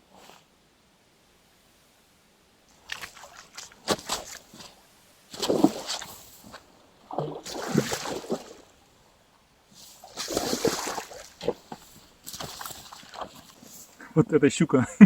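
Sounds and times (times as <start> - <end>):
water splashing: 2.7 - 9.0, 10.0 - 14.2.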